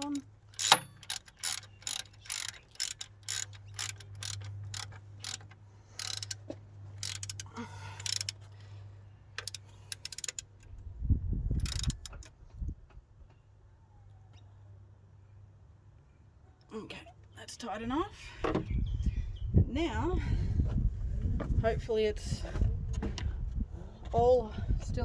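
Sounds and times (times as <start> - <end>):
ratchet wrench clicking: 0.0 - 6.4, 7.0 - 8.5, 9.4 - 10.6, 11.6 - 12.2.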